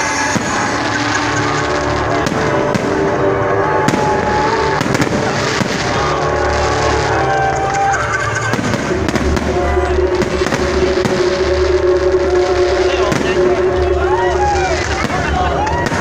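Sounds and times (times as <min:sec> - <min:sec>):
fireworks bangs and crackles: 0:00.0 - 0:16.0
loud music with heavy bass: 0:00.0 - 0:16.0.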